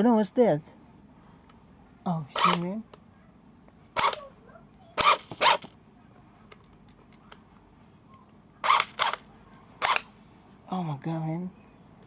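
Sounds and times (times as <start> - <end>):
impact wrench blasts: 2.4 - 2.8, 4.0 - 4.3, 5.0 - 5.8, 8.6 - 10.3.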